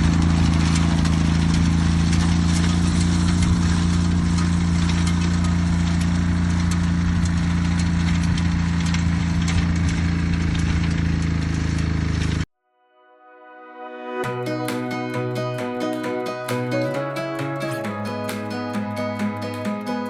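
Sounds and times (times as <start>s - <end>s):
engine running steadily: 0.0s - 12.4s.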